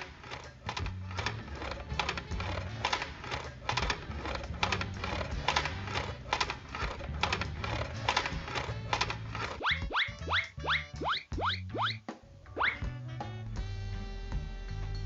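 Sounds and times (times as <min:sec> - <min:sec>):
background music with clicking beat: 0:00.0 - 0:15.0
stepping bass line: 0:09.6 - 0:12.0.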